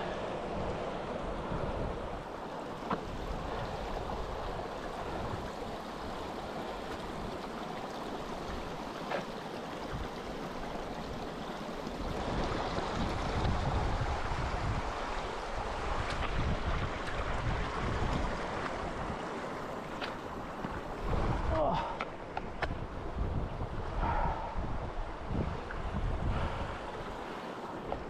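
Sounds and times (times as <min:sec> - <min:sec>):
stream rushing over rocks: 0:00.0 - 0:28.0
wind buffeting microphone: 0:11.9 - 0:19.4, 0:20.2 - 0:28.0.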